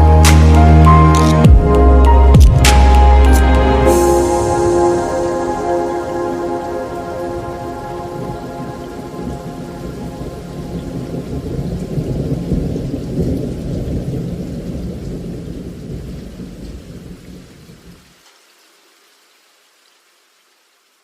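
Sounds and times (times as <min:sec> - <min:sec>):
rain falling: 0:00.0 - 0:21.0
deep thunder rumble: 0:03.8 - 0:17.6.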